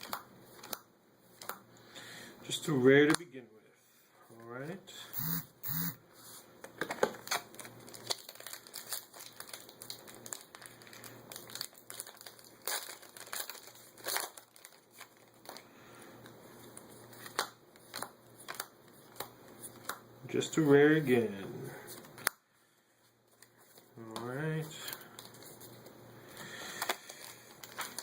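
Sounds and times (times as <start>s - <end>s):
foil wrapper crinkling and tearing: 7.1s - 15.7s, 16.6s - 20.0s, 23.3s - 28.0s.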